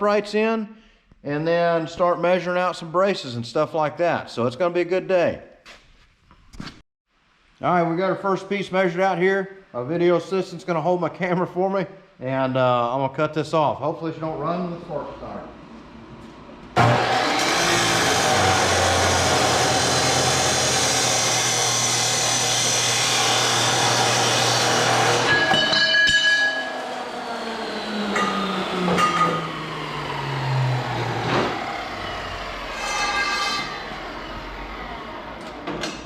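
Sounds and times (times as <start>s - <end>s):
motor winding down: 16.8s - 25.3s, 26.6s - 32.8s, 33.6s - 35.7s
cut-off wheel grinding metal: 16.8s - 36.0s.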